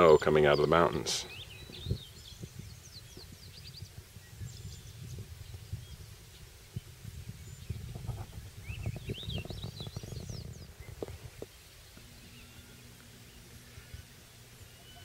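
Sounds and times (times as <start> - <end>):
faint steady hum: 0.0 - 15.0
low rumbling: 0.0 - 15.0
small bird twittering: 0.1 - 15.0.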